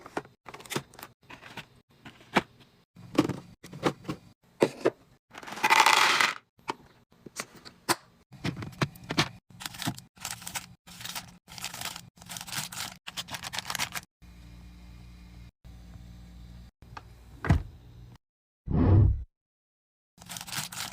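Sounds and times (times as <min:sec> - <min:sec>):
packaging crinkling and tearing: 0:09.5 - 0:14.1, 0:20.2 - 0:20.9.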